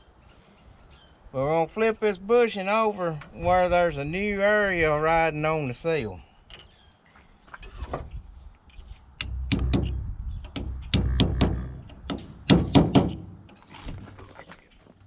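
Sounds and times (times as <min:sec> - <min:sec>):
metal parts knocking and clunking: 0:07.6 - 0:14.4.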